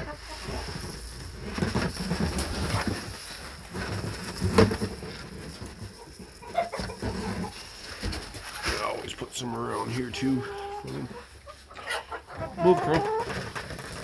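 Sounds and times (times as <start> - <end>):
seeds rustling from a bag: 0.0 - 10.4.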